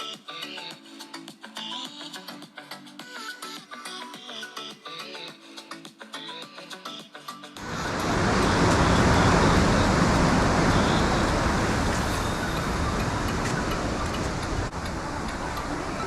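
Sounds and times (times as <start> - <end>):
steady rushing noise: 7.6 - 16.0.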